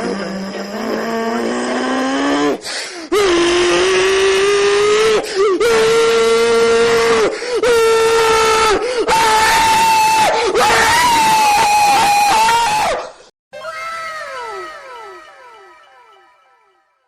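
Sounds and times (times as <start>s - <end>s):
person wailing: 3.1s - 12.8s.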